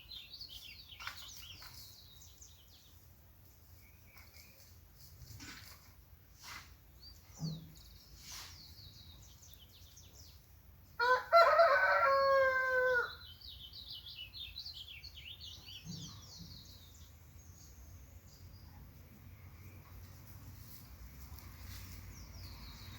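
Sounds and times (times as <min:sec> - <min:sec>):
small birds chirping: 0:00.0 - 0:10.9, 0:13.0 - 0:22.9
rooster crowing: 0:11.0 - 0:13.2.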